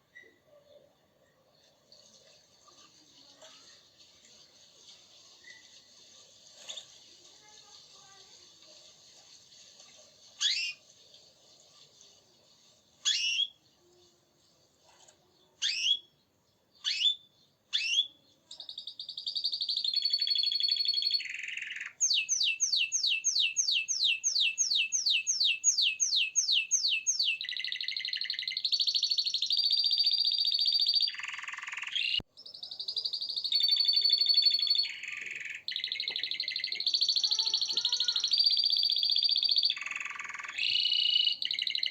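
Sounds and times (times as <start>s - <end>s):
canary singing: 10.4s - 10.8s, 13.0s - 13.7s, 15.5s - 16.2s, 16.8s - 41.9s.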